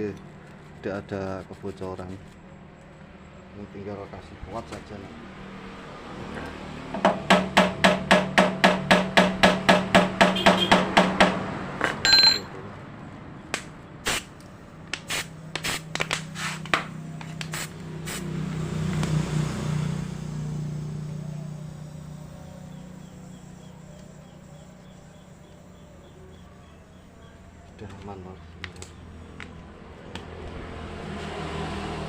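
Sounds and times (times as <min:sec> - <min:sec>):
metallic ring: 0:12.0 - 0:12.6.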